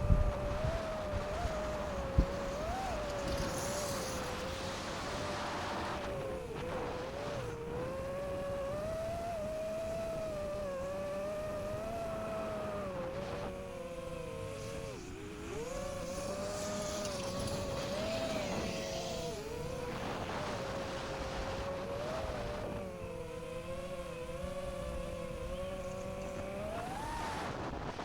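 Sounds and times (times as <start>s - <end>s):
drone propellers whining: 0.0s - 28.0s
wind noise: 0.0s - 28.0s.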